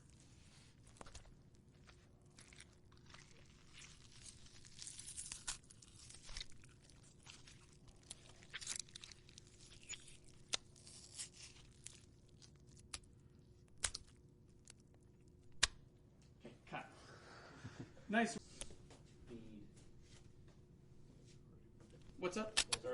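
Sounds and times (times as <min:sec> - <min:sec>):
fruit rinds tearing and crackling: 0:00.8 - 0:15.8
sharp snaps: 0:13.8 - 0:14.1, 0:15.5 - 0:15.8, 0:22.4 - 0:22.9.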